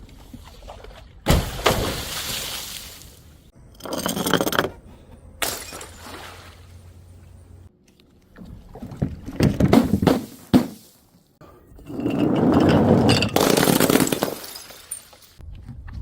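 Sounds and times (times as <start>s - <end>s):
glass shards clinking: 11.8s - 15.4s
glass bottles shattering: 11.9s - 15.4s.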